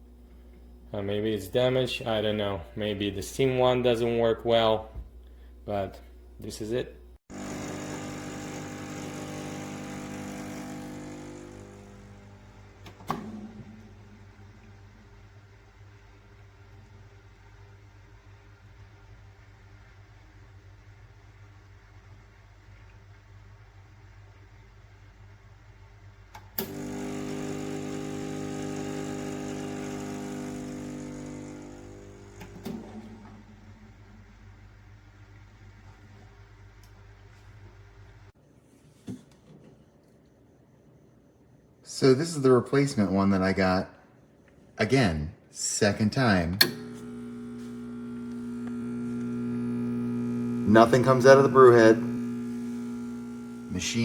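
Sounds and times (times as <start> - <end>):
espresso machine pump humming: 7.3 - 14.2, 26.6 - 33.3, 46.6 - 54.0.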